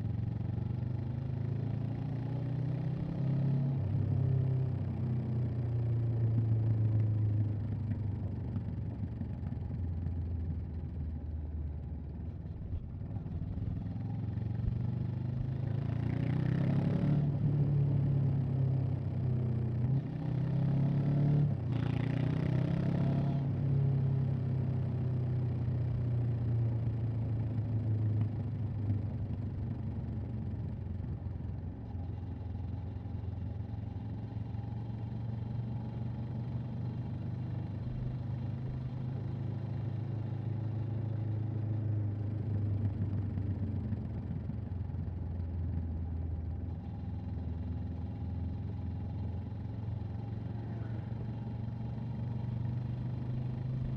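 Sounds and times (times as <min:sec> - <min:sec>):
motorcycle engine running: 0:03.9 - 0:16.6, 0:24.9 - 0:53.9.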